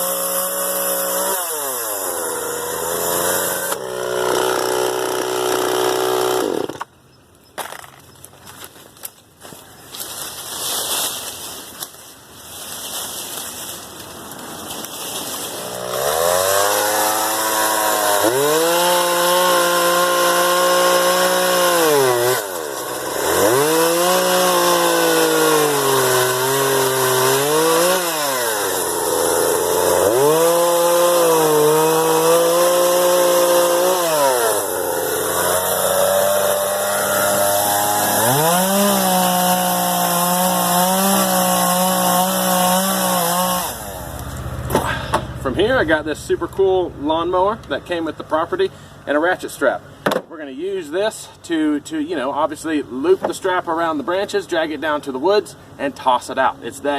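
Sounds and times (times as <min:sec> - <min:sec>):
chainsaw cutting wood: 0:00.0 - 0:06.9, 0:14.0 - 0:46.0.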